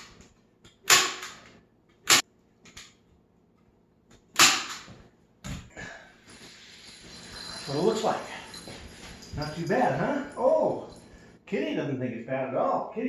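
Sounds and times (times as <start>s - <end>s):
staple gun shots: 0.8s - 2.2s, 4.3s - 4.9s.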